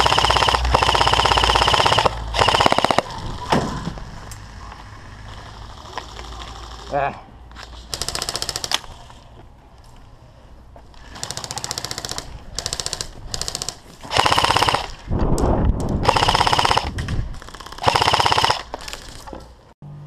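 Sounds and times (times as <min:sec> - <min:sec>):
airsoft guns firing in bursts: 0:00.0 - 0:03.5, 0:07.9 - 0:09.0, 0:11.0 - 0:15.0, 0:16.0 - 0:19.2.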